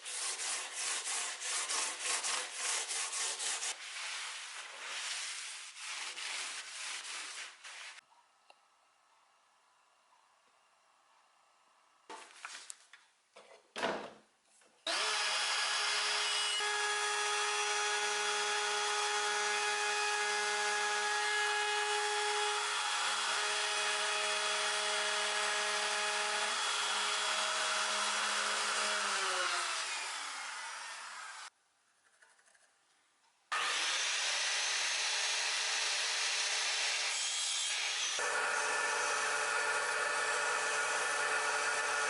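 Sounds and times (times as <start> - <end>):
power tool cutting wood: 14.9 - 31.5, 33.5 - 42.0.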